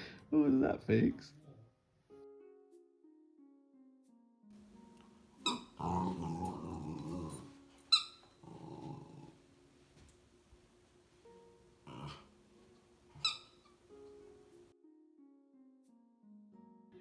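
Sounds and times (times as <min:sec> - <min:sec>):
puppy growling: 0:04.6 - 0:14.5
puppy yipping: 0:05.4 - 0:08.9, 0:13.1 - 0:13.8.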